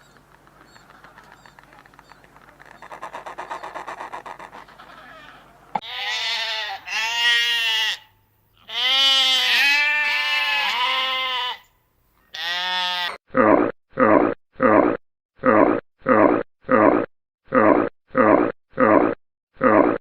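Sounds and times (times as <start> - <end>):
goat or sheep bleating: 4.7 - 11.7, 12.3 - 13.2.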